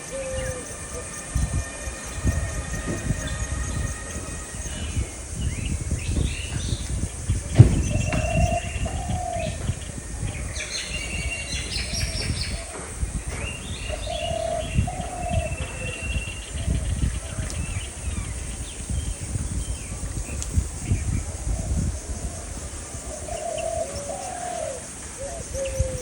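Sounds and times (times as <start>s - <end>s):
low two-note cooing call: 0.0s - 6.8s
small birds chirping: 0.0s - 26.0s.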